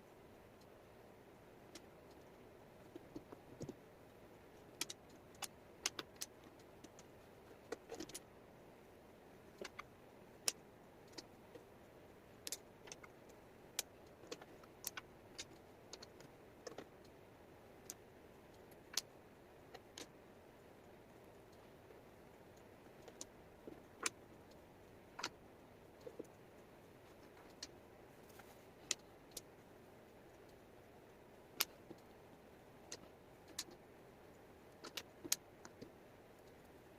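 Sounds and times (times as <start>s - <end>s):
faint steady hiss: 0.0s - 36.9s
wooden puzzle pieces clicking: 9.6s - 11.6s, 34.8s - 36.6s.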